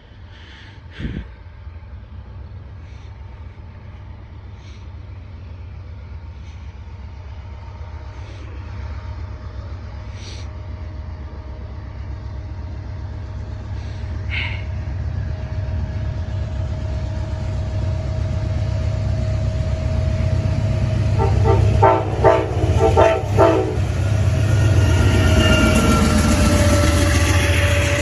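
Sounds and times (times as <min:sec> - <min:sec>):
diesel locomotive engine rumble: 0:00.0 - 0:28.0
locomotive air horn blasts: 0:21.2 - 0:27.5.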